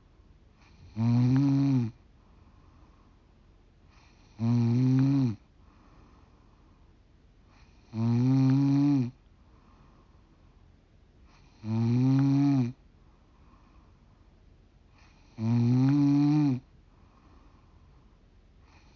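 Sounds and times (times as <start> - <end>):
woman snoring: 0.6 - 2.0, 4.0 - 5.4, 7.6 - 9.2, 11.4 - 12.8, 15.0 - 16.6.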